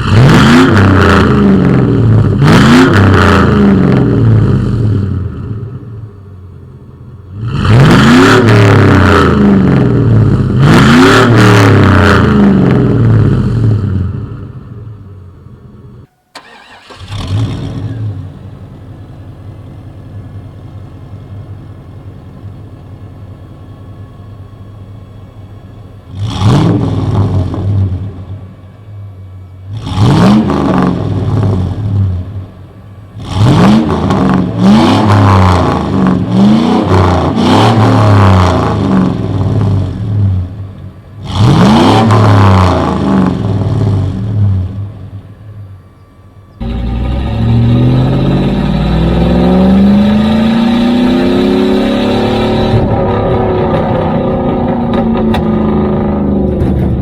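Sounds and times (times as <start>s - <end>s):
truck engine revving: 0.0s - 18.6s, 26.0s - 28.7s, 29.6s - 57.0s
truck engine idling: 12.9s - 17.4s, 18.2s - 26.2s, 39.2s - 41.3s, 43.4s - 50.2s.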